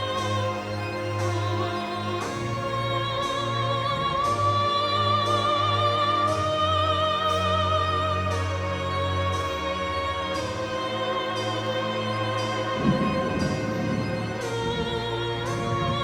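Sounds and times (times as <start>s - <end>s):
high voice singing with vibrato: 0.0s - 16.0s
orchestra playing: 0.0s - 16.0s.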